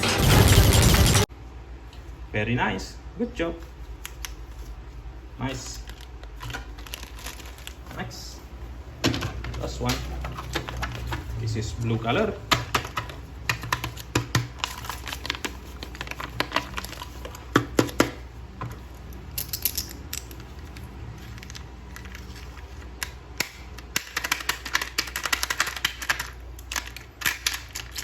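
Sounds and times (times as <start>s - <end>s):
rustling: 3.6s - 8.5s.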